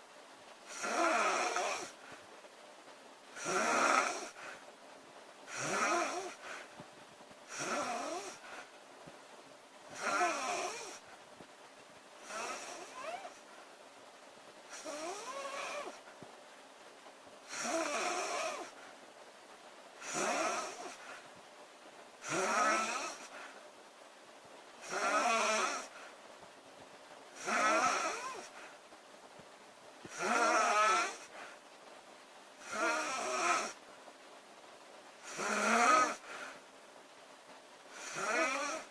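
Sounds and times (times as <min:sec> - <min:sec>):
woman snoring: 0:00.7 - 0:02.0, 0:03.4 - 0:04.6, 0:05.5 - 0:06.6, 0:07.5 - 0:08.7, 0:10.0 - 0:11.0, 0:12.2 - 0:13.4, 0:14.7 - 0:16.0, 0:17.5 - 0:18.8, 0:20.0 - 0:21.1, 0:22.2 - 0:23.5, 0:24.8 - 0:26.0, 0:27.4 - 0:28.6, 0:30.1 - 0:31.4, 0:32.6 - 0:33.8, 0:35.2 - 0:36.6, 0:37.9 - 0:38.9.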